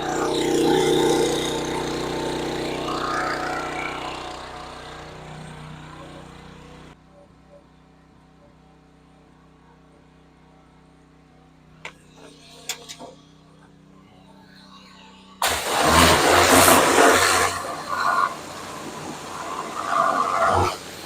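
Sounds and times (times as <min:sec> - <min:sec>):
pressure washer humming: 0:00.0 - 0:07.0, 0:11.9 - 0:21.0
loud rushing water spray: 0:15.4 - 0:21.0.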